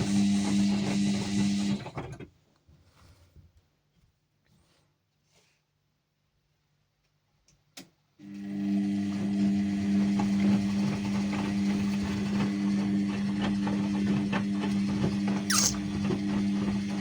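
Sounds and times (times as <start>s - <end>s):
washing machine motor hum: 0.0s - 2.3s, 8.2s - 17.0s.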